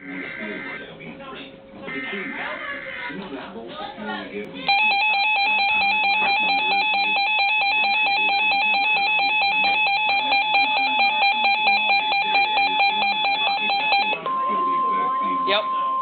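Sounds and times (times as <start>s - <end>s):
warbling electronic alarm beep: 4.7s - 16.0s.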